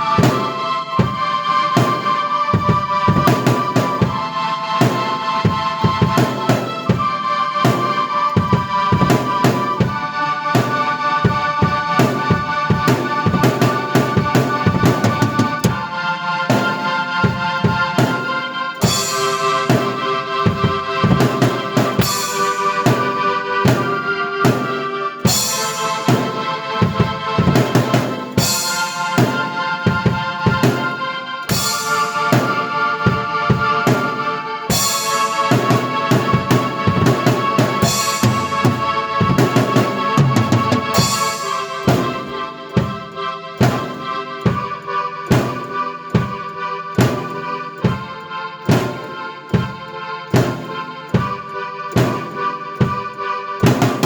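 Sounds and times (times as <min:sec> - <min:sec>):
busy drum beat: 0:00.0 - 0:15.9, 0:16.5 - 0:54.0
held keyboard chords: 0:00.0 - 0:54.0
cymbal crashes: 0:28.3 - 0:30.1, 0:34.1 - 0:43.0.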